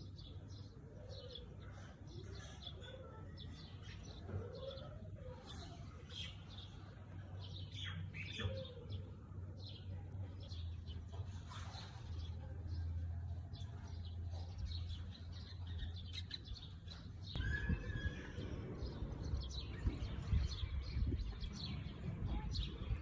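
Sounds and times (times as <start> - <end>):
birds chirping and calling: 0.0 - 23.0.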